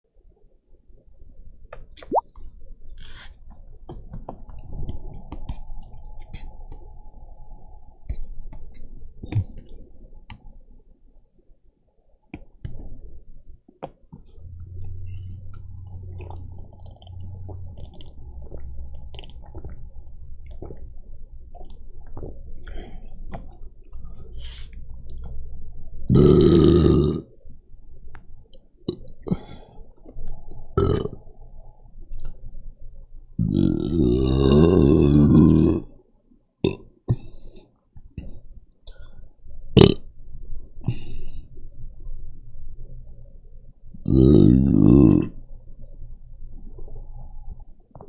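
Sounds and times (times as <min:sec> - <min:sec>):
person burping: 0:26.1 - 0:27.3, 0:30.8 - 0:31.2, 0:33.4 - 0:35.9, 0:36.6 - 0:36.9, 0:39.8 - 0:40.0, 0:44.1 - 0:45.4.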